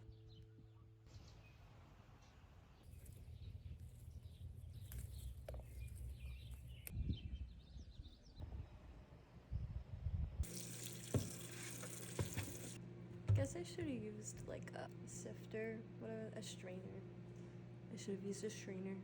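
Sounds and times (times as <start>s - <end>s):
wind rumble on microphone: 6.1s - 10.4s.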